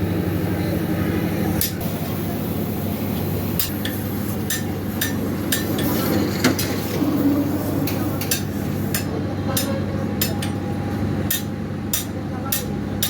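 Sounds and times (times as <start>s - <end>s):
hand tools tapping metal: 11.3s - 12.7s.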